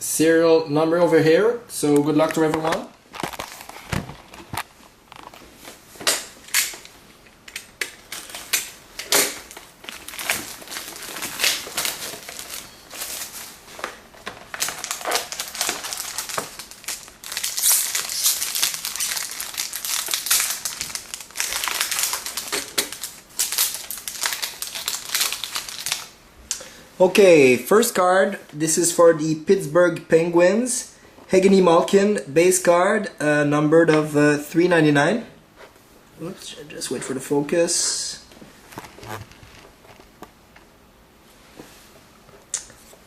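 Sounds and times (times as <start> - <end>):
plastic wrap tearing and crinkling: 3.1 - 5.5, 7.6 - 26.2, 38.6 - 40.3.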